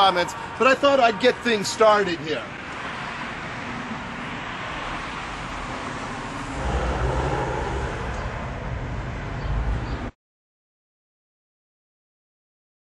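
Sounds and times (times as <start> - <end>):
road traffic passing: 0.0 - 10.2
low rumble: 6.6 - 8.9.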